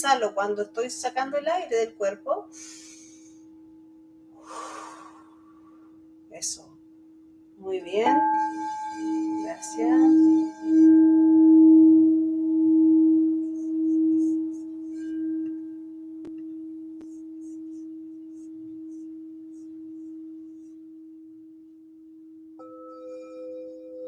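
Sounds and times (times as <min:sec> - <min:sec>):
crystal singing bowl ringing: 0:07.6 - 0:21.6, 0:22.2 - 0:24.0.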